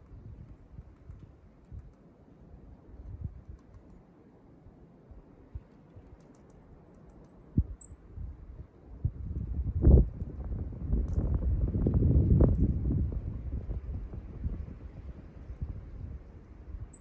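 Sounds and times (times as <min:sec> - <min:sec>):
faint high-pitched bird chips: 0:06.1 - 0:08.1.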